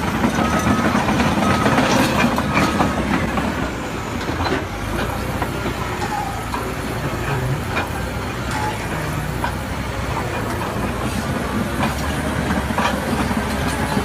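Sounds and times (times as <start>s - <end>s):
heavy machinery clattering: 0.0s - 14.0s
reversing alarm beeping: 0.2s - 3.7s, 8.4s - 9.3s.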